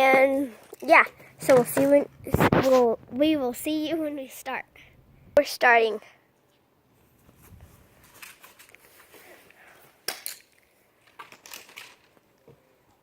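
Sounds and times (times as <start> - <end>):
rustling: 0.4 - 3.6, 6.9 - 12.6.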